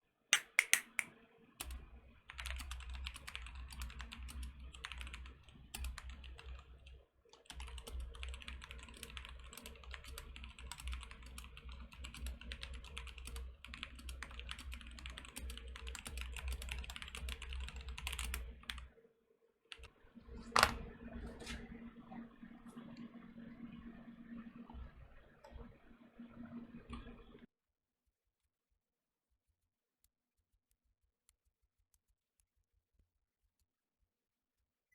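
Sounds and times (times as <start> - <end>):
fast typing on mechanical keyboard: 1.6 - 18.9.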